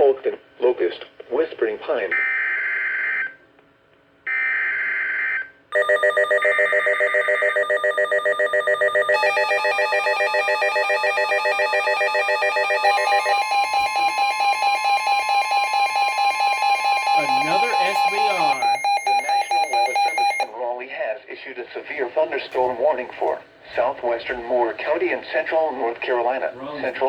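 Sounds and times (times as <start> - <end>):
rapidly pulsing alert alarm: 5.8 - 20.5
steady warning tone: 5.8 - 20.5.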